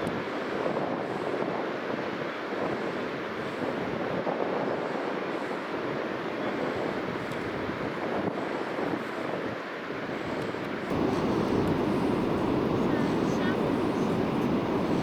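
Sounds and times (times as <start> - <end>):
wind buffeting microphone: 0.0 - 15.0
sea surf: 10.9 - 15.0.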